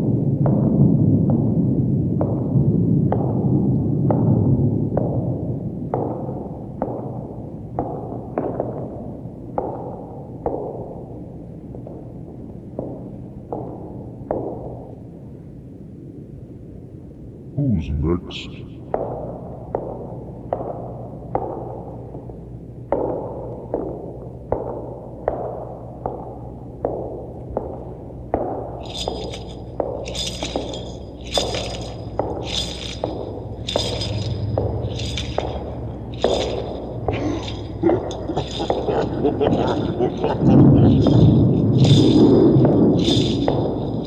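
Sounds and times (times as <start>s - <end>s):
low tape hum: 0.0s - 44.0s
steady low rumble: 0.0s - 44.0s
heavy echoing blows: 17.2s - 44.0s.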